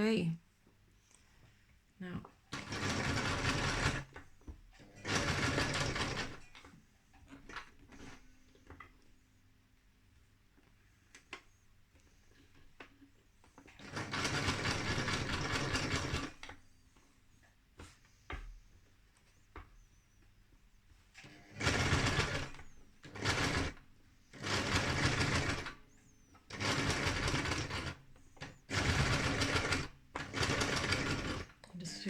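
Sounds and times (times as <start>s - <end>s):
sewing machine stitching: 2.5s - 8.9s, 13.6s - 16.6s, 21.2s - 32.0s.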